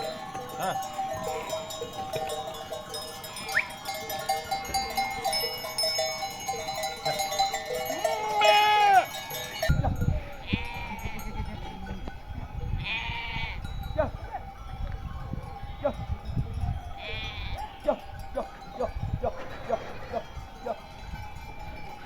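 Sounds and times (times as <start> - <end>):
sheep bells ringing: 0.0 - 22.0
sheep bleating: 7.9 - 9.2, 10.3 - 11.8, 12.8 - 13.7, 17.0 - 18.2.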